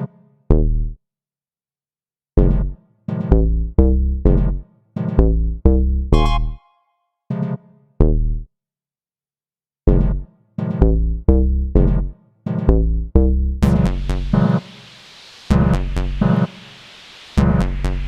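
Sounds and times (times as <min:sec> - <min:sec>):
synthesizer notes with deep bass: 0:02.4 - 0:06.7, 0:10.8 - 0:14.5
steady hiss: 0:13.7 - 0:18.0.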